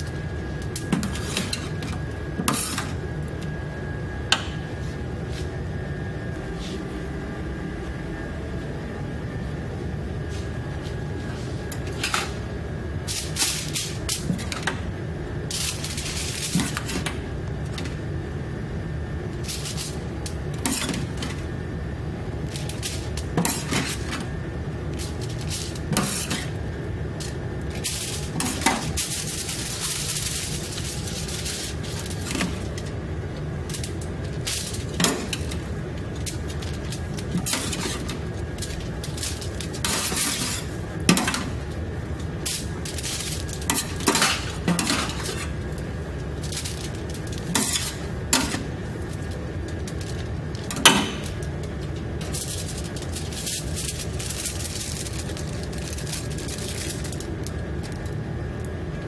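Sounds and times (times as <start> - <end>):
steady low hum: 0.0 - 59.0
dishes and utensils clattering: 50.7 - 51.5.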